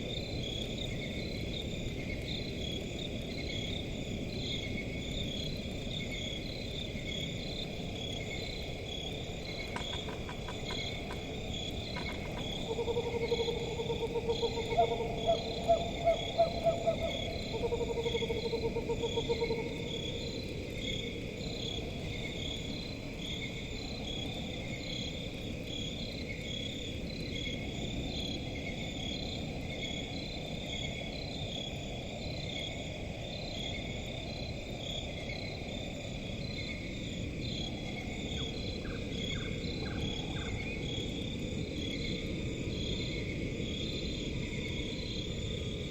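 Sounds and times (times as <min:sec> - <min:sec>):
crickets chirping: 0:00.0 - 0:45.9
owl trilled hoots: 0:12.0 - 0:19.7.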